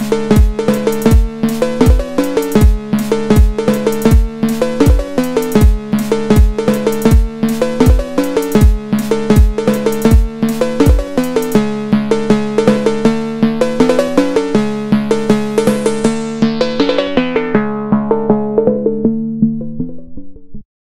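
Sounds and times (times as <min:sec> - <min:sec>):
deep drum beat: 0:00.0 - 0:11.3
synthesizer electronic music: 0:00.0 - 0:20.6.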